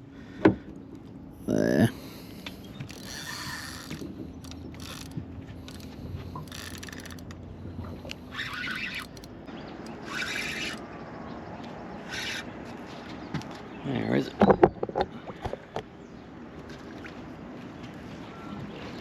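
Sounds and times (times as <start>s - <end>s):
fishing reel ratcheting: 2.8s - 7.4s, 8.3s - 10.8s.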